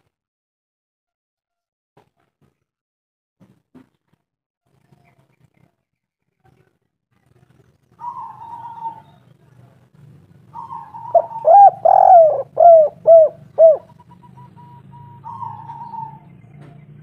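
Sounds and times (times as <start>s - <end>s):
dove cooing: 8.0s - 9.1s, 10.5s - 16.3s.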